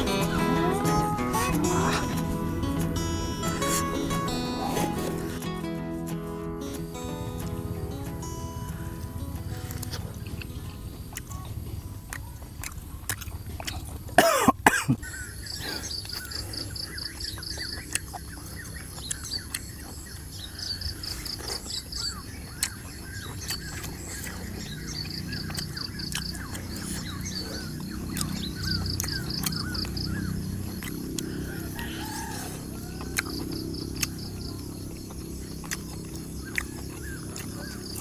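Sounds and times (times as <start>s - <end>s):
high insect drone: 0.0s - 12.5s, 23.0s - 38.0s
birds chirping: 0.0s - 38.0s.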